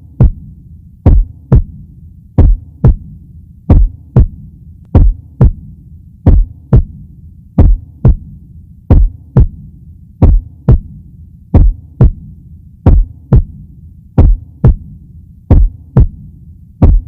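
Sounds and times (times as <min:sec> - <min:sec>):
heartbeat thuds: 0:00.0 - 0:01.8, 0:02.4 - 0:07.0, 0:07.6 - 0:13.6, 0:14.2 - 0:17.0
steady low hum: 0:00.0 - 0:17.0.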